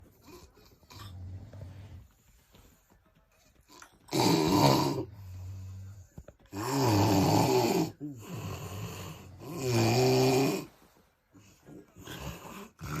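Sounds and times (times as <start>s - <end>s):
quiet breath: 5.0s - 6.6s, 7.9s - 9.6s, 10.4s - 13.0s
person snoring loudly: 6.5s - 10.7s.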